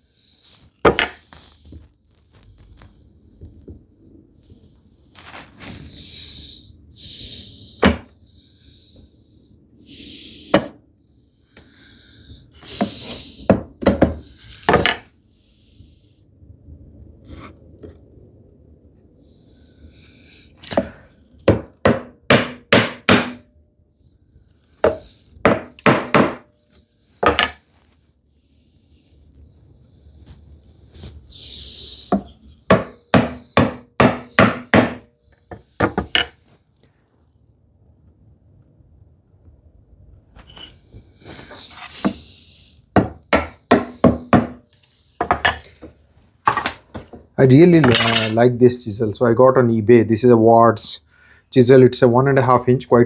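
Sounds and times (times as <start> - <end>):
knocks on wood: 21.5 - 23.4, 24.9 - 26.4, 43.0 - 44.6.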